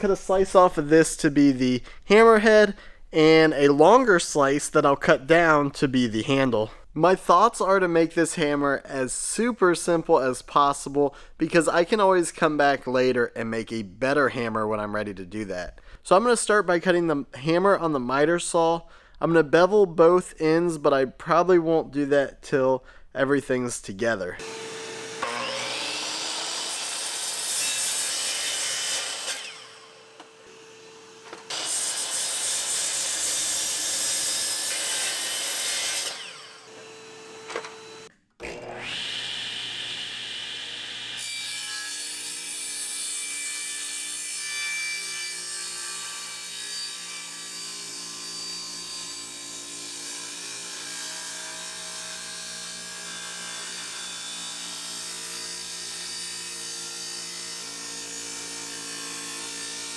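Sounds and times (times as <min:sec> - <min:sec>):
miter saw cutting wood: 0:24.4 - 0:59.9.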